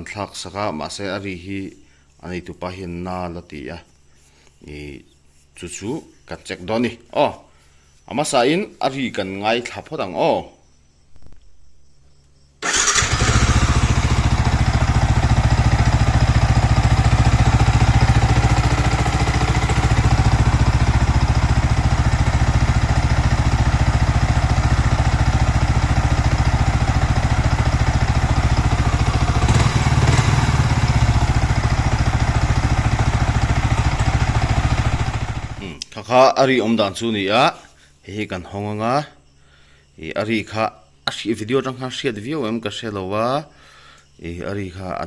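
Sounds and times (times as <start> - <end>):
motorcycle engine starting and idling: 12.6 - 35.8.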